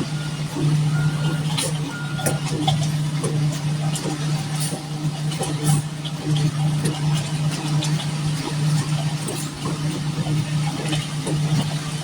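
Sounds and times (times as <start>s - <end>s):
diesel truck engine running: 0.0s - 3.1s.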